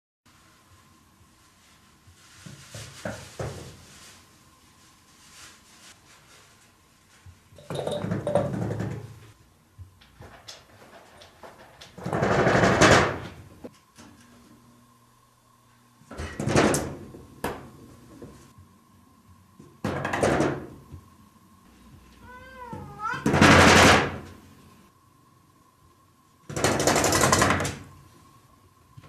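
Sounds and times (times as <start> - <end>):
cat meowing: 22.2 - 23.4.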